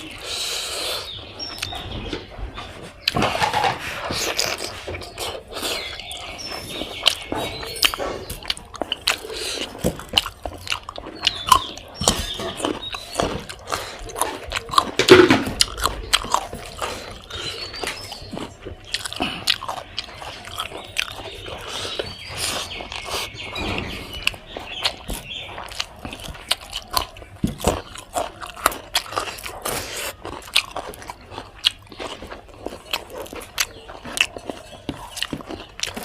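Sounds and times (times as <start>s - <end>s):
person chewing and biting: 0.0s - 1.9s, 2.8s - 36.0s
mouth clicks and smacks: 0.0s - 36.0s.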